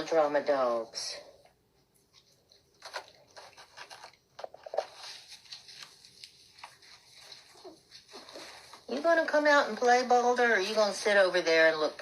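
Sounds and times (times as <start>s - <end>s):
puppies scuffling and chewing: 1.7s - 9.1s.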